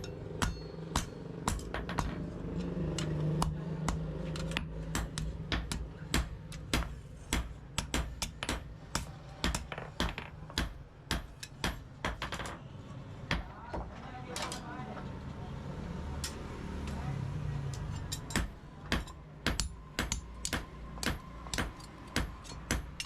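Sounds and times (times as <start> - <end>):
hammer striking steel on anvil: 0.0 - 12.2, 17.8 - 23.0.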